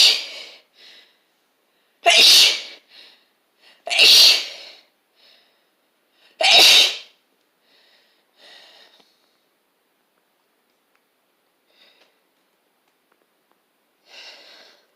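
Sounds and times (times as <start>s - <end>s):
person sneezing: 0.0s - 0.5s, 2.0s - 2.8s, 3.9s - 4.8s, 6.4s - 7.2s.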